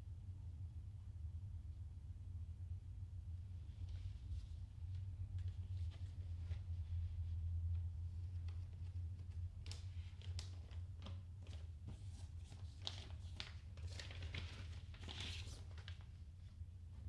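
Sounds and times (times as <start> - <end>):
low electrical hum: 0.0 - 17.0
packaging crinkling and tearing: 12.7 - 16.0.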